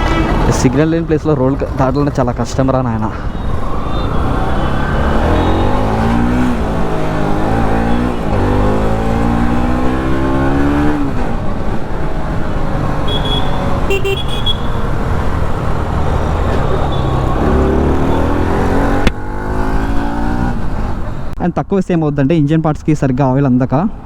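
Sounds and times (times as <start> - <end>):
road noise: 0.0 - 24.0
motorcycle engine accelerating: 3.4 - 21.4.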